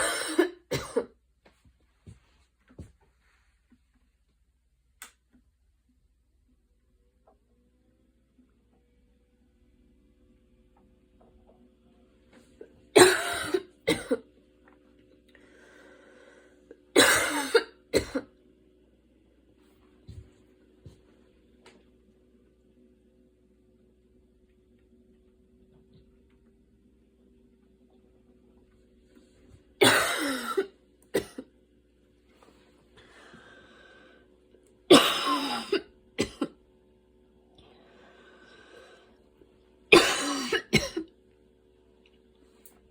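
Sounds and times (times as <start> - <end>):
woman coughing: 0.0 - 1.2, 13.0 - 14.2, 17.0 - 18.3, 29.8 - 31.5, 34.9 - 36.6, 39.9 - 41.1.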